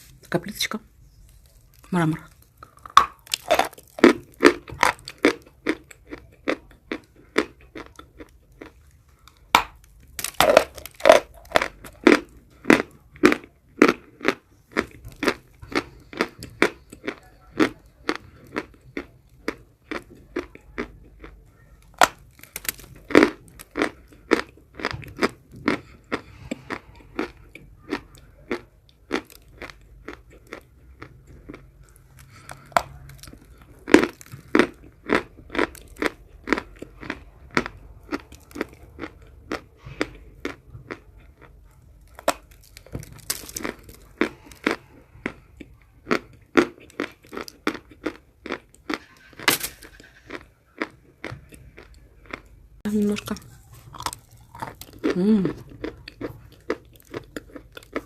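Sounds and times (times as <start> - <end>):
person crunching chalk: 1.4 - 18.2, 42.1 - 45.5.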